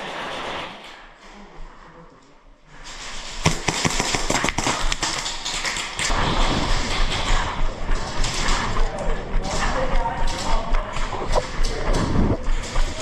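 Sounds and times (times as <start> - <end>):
noise: 0.1 - 13.0
airsoft guns firing: 3.4 - 6.1.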